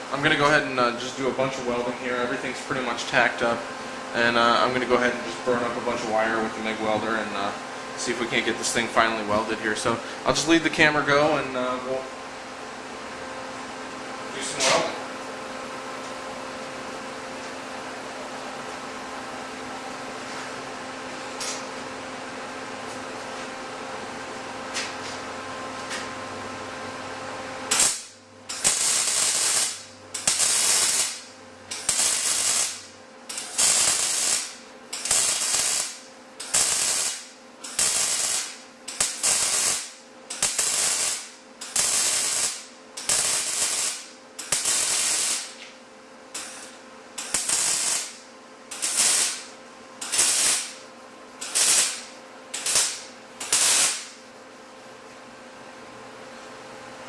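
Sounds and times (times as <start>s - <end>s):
steady electrical hum: 0.0s - 57.0s
welder arc crackling: 27.6s - 45.7s, 46.3s - 54.2s.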